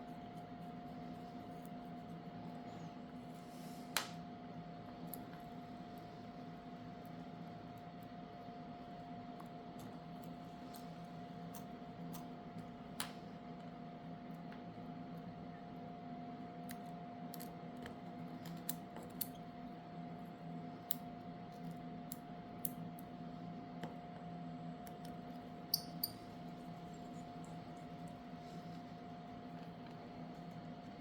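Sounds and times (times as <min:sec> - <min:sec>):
faint electrical hum: 0:00.0 - 0:31.0
small tools clicking and tapping: 0:24.9 - 0:26.3.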